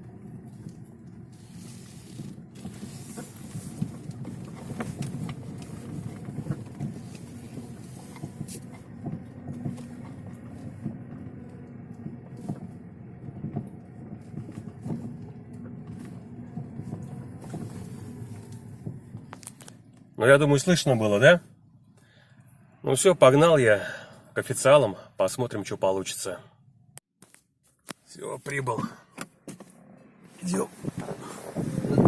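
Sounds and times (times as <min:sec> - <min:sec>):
road and tyre noise: 0:00.0 - 0:32.0
suspension knocking: 0:02.1 - 0:20.0.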